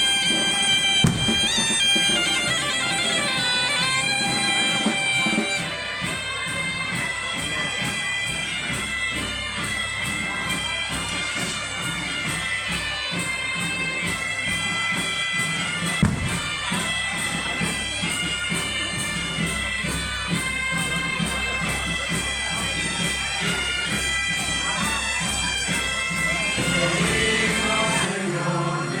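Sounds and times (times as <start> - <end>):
steady drum beat: 0.0 - 28.2
bagpipe playing a tune: 0.0 - 29.0
sharp knock: 1.0 - 1.6, 16.0 - 16.6.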